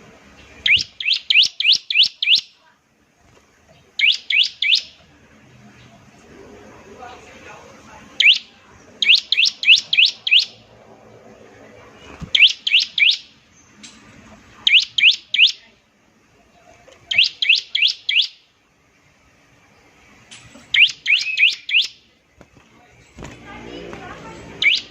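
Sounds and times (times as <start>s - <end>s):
bird singing shrill notes: 0.6s - 2.6s, 4.0s - 5.0s, 8.2s - 10.6s, 12.3s - 13.8s, 14.7s - 15.6s, 17.1s - 18.4s, 20.7s - 22.0s, 24.6s - 24.9s.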